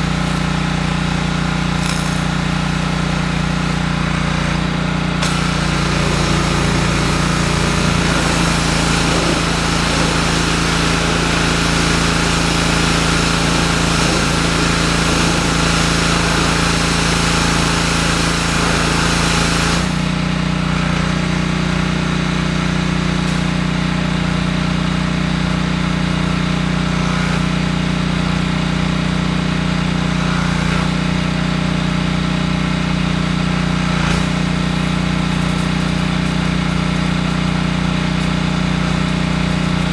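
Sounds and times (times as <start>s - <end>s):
high-pressure water jet hissing: 0.0s - 31.6s, 32.9s - 39.9s
pressure washer engine running: 0.0s - 39.9s.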